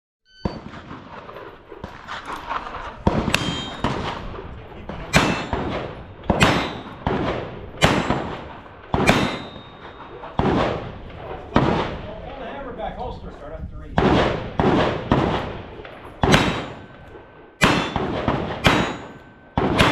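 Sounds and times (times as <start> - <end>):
shot timer beep: 0.3 - 0.7
loud gunshots: 0.4 - 12.2, 14.0 - 19.9
steel targets ringing: 3.3 - 4.2, 5.1 - 7.1, 7.8 - 10.4, 16.2 - 19.9.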